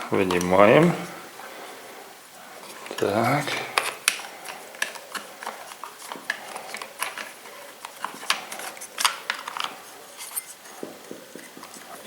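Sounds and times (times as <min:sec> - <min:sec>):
small parts clicking and tapping: 0:03.7 - 0:11.9.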